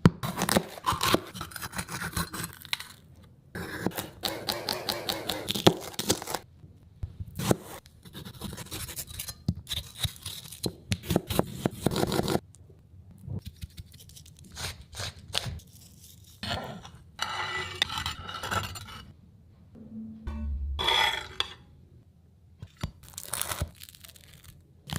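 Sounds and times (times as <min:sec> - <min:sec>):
kitchen utensils scraping and clinking: 0:16.5 - 0:19.1.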